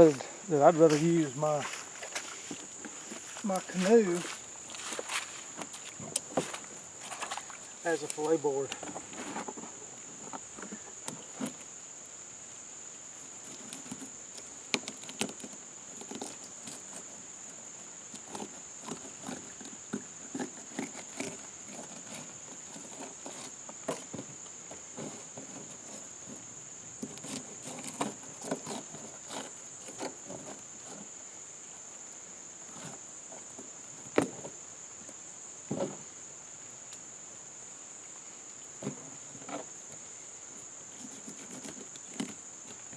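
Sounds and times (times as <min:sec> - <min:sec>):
taps and scrapes handling fish: 0:00.0 - 0:11.7, 0:13.2 - 0:17.2, 0:18.1 - 0:31.1, 0:40.6 - 0:42.9.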